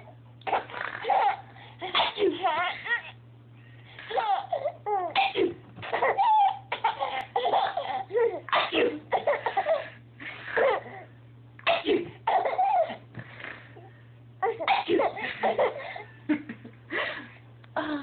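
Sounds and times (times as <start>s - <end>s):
baby laughing: 0.5s - 1.4s, 4.0s - 5.2s, 5.8s - 11.0s, 12.3s - 13.0s.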